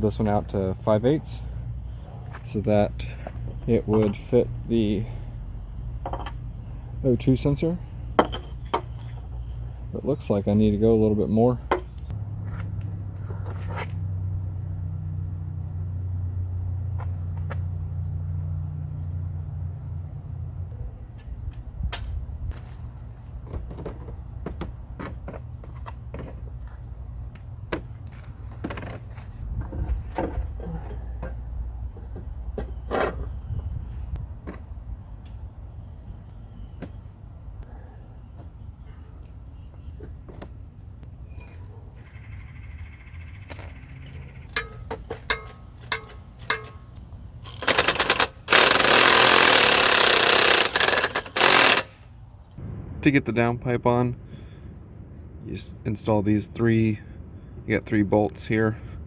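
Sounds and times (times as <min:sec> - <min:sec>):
metal parts and tools clicking: 0:41.2 - 0:51.9
power tool running: 0:47.5 - 0:52.0.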